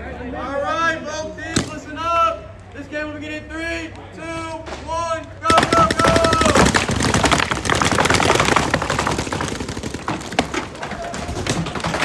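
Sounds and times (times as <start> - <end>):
paintball markers firing: 1.5 - 1.9, 5.5 - 12.0.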